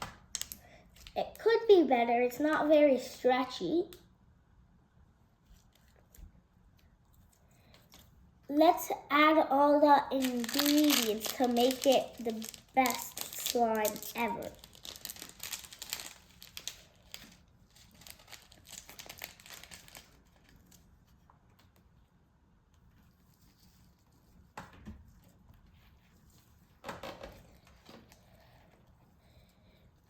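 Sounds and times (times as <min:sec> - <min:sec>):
plastic packaging crinkling: 0:09.8 - 0:20.8.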